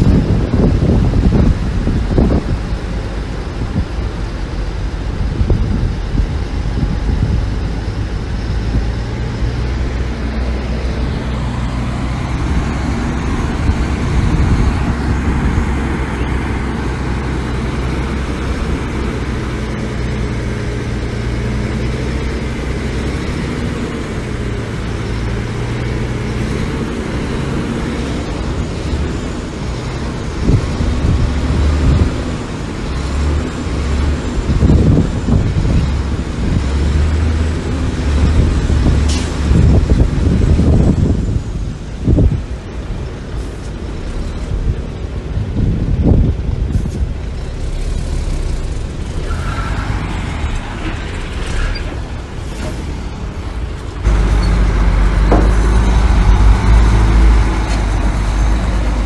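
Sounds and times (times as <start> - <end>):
diesel machinery engine drone: 0.0 - 59.0.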